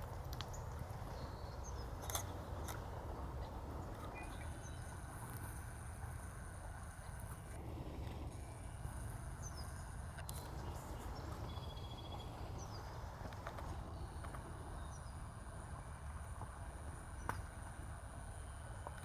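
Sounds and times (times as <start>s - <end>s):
faint soft clicks: 0.0s - 0.6s
small birds chirping: 0.0s - 5.2s, 9.4s - 15.9s
wind rumble on microphone: 0.0s - 19.0s.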